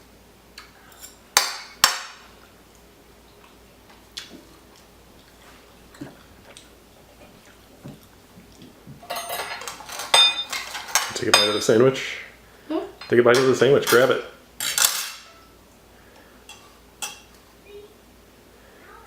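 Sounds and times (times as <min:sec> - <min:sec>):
dishes and utensils clattering: 0:09.0 - 0:11.8, 0:13.0 - 0:15.5, 0:16.5 - 0:17.4.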